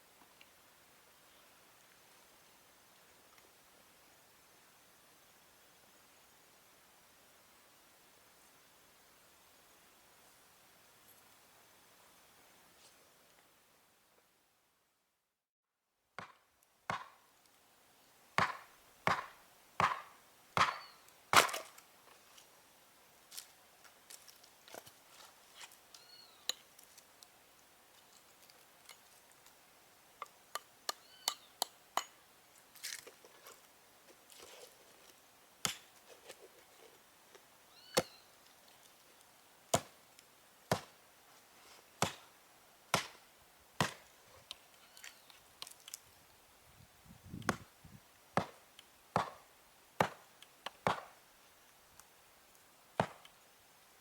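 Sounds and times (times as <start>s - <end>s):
wood being chopped: 16.2s - 17.2s, 18.4s - 21.8s, 35.6s - 35.9s, 39.7s - 40.0s, 40.7s - 41.0s, 42.0s - 42.3s, 42.9s - 43.2s, 43.8s - 44.0s, 47.4s - 47.7s, 48.4s - 51.2s, 53.0s - 53.3s.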